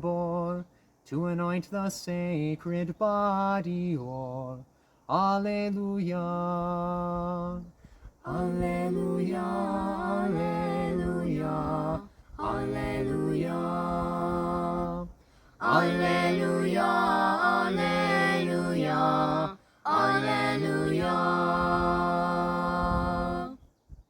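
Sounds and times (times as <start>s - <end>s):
choir singing a cappella: 8.2s - 23.6s.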